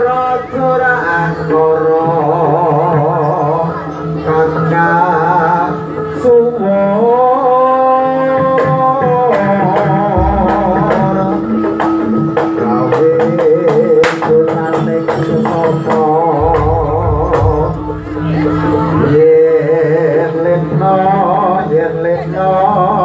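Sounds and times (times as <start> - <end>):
person singing with vibrato: 0.0 - 23.0
drum and percussion strokes: 8.6 - 19.8.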